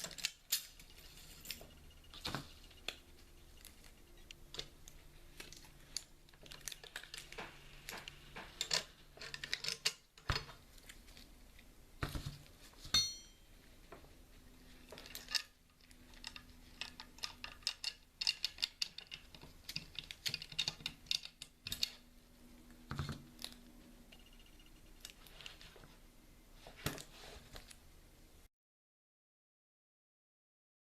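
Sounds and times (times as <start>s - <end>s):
short metallic ring: 12.9s - 13.5s.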